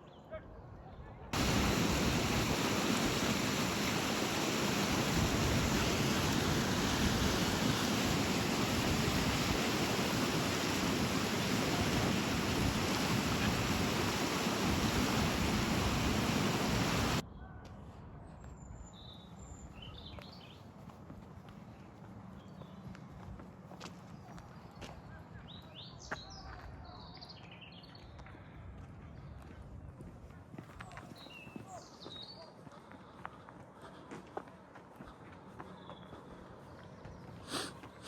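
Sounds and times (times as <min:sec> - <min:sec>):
loud steady rushing noise: 0:01.4 - 0:17.2.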